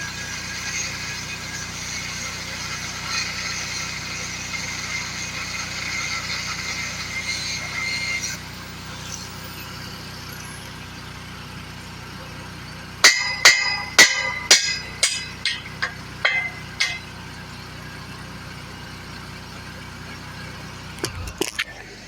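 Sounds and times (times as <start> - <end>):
hammer striking steel: 13.0 - 17.1
low engine hum: 13.9 - 22.0.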